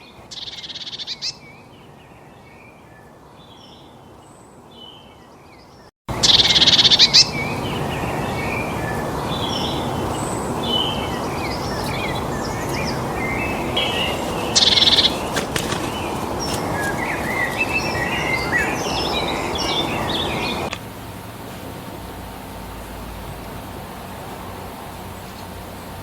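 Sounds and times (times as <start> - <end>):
birds chirping and calling: 0.0 - 2.6, 4.8 - 20.8
quiet hiss: 0.0 - 26.0
steady background rush: 6.1 - 26.0.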